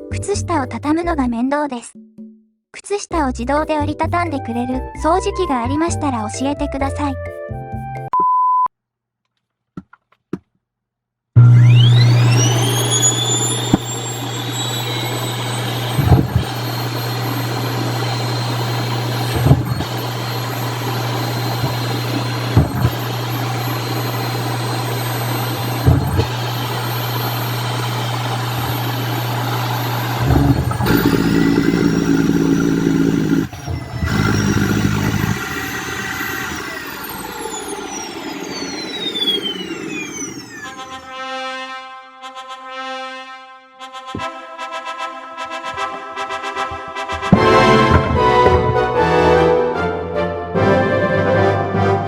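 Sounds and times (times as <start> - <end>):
vacuum cleaner motor whining: 11.4 - 41.2.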